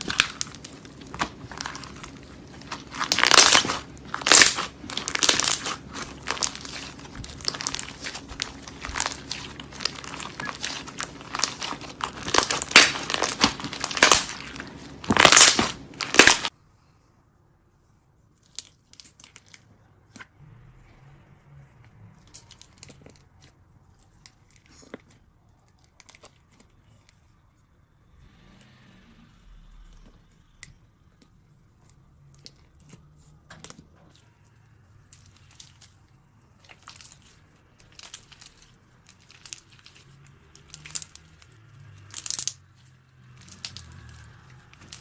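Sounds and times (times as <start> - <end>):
slime crackling and clicking: 0.0 - 16.5, 36.6 - 42.6, 43.4 - 44.2
slime squishing: 0.0 - 16.6, 18.1 - 20.4, 22.2 - 27.8, 30.6 - 45.0.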